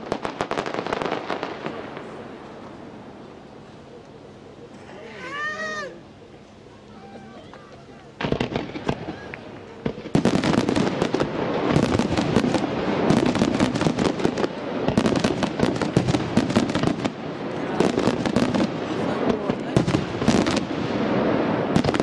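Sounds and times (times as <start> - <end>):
fireworks bangs and crackles: 0.0 - 3.4, 7.5 - 22.0.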